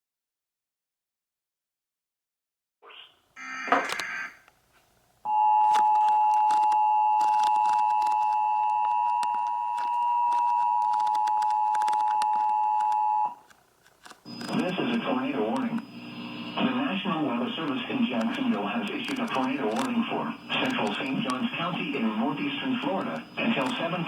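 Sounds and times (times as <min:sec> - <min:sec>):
two-tone alert signal: 0:03.4 - 0:04.4.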